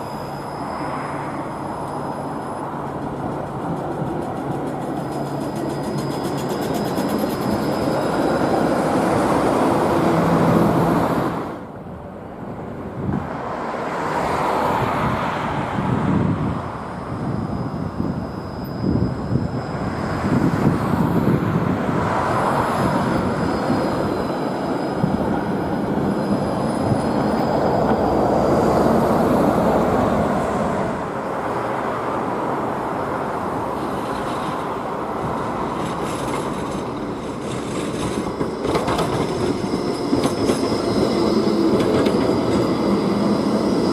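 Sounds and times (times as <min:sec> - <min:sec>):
high-pitched wheel squeal: 0:00.0 - 0:10.6, 0:15.2 - 0:30.6, 0:35.6 - 0:43.9
tram wheels rumbling on rail: 0:00.0 - 0:43.9.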